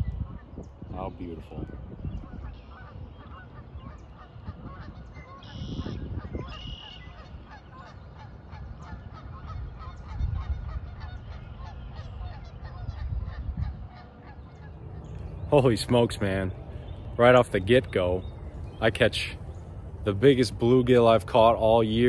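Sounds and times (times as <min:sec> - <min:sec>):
cranes honking calls: 0:02.2 - 0:21.2
low rumble: 0:08.5 - 0:22.0.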